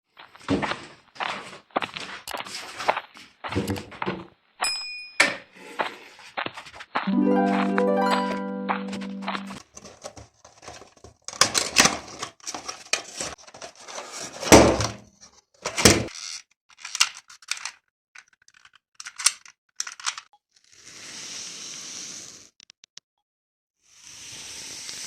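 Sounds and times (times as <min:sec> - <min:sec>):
plastic toy clicks and rattles: 0:16.1 - 0:20.3.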